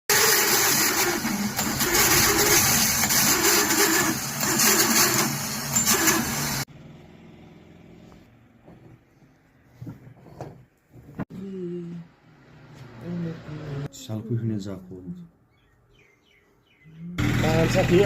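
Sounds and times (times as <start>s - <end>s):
car starter motor running harshly: 0.1s - 6.7s, 17.2s - 18.0s.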